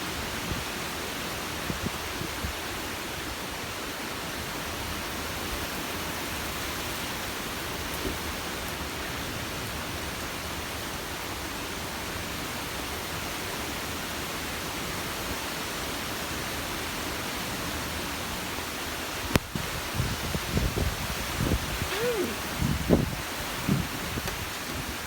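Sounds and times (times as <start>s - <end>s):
rushing storm hiss: 19.5s - 25.0s.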